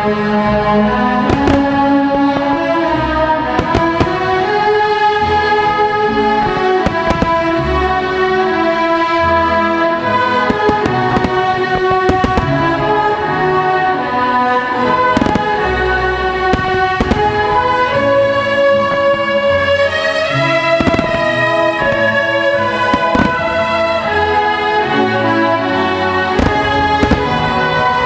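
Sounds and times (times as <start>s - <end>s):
orchestral music: 0.0s - 28.0s
firework shells bursting: 1.3s - 2.8s, 3.5s - 4.9s, 6.3s - 7.8s, 10.4s - 13.2s, 15.0s - 15.8s, 16.4s - 18.0s, 18.8s - 23.8s, 26.3s - 28.0s.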